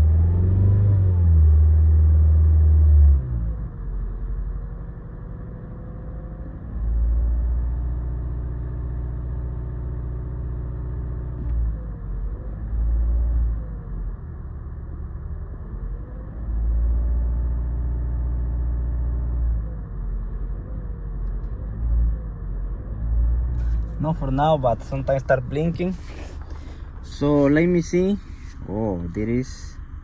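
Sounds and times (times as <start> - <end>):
car engine revving: 0.0 - 4.5, 5.6 - 30.0
steady low rumble: 19.2 - 30.0.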